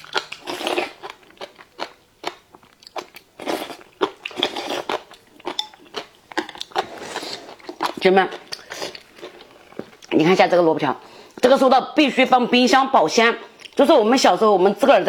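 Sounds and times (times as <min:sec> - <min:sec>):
chewing crunchy pickled radish: 0:00.0 - 0:10.2.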